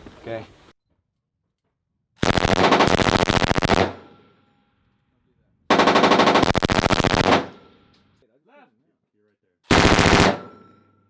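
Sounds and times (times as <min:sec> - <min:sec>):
machine gun automatic fire: 0:02.2 - 0:04.2, 0:05.7 - 0:07.8, 0:09.7 - 0:10.7
gunshot echo: 0:09.8 - 0:10.7.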